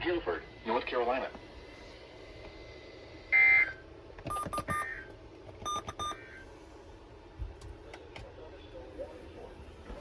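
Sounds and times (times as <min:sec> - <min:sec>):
short electronic beeps: 0:04.3 - 0:04.8, 0:05.6 - 0:06.2.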